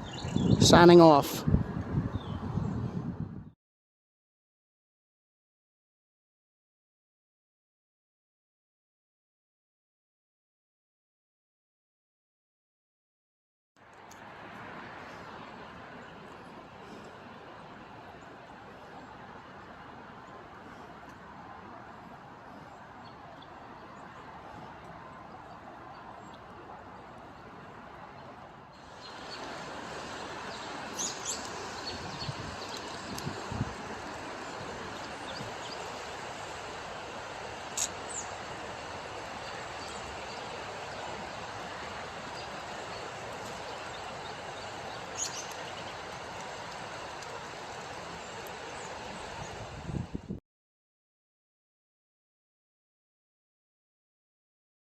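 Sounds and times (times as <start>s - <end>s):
bird chirp: 0.0s - 0.6s, 28.9s - 36.5s, 37.8s - 38.4s, 39.3s - 41.3s, 42.2s - 46.2s
steady outdoor rushing noise: 13.8s - 50.4s
faint high bird chirps: 30.5s - 33.4s, 42.4s - 45.9s.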